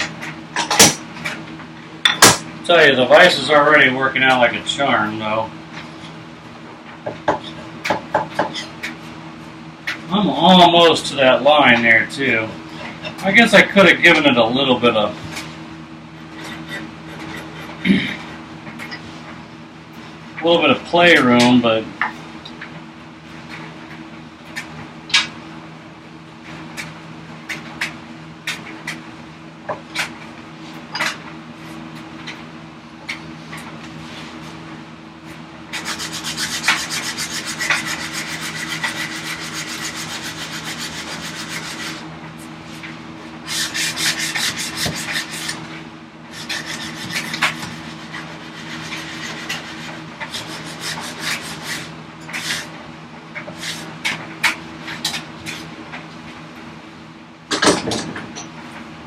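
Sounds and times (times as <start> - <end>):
rasp strokes on wood: 35.8 - 42.1, 43.5 - 45.7, 46.3 - 52.7.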